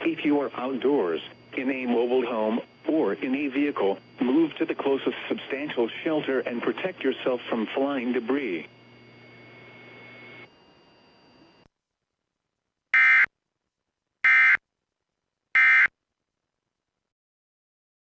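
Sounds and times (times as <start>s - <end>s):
faint radio hiss: 0.0s - 12.8s.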